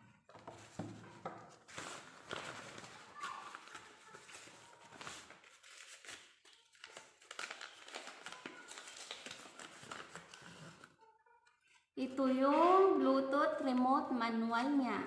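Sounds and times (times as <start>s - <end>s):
packaging crinkling and rustling: 0.2s - 11.0s.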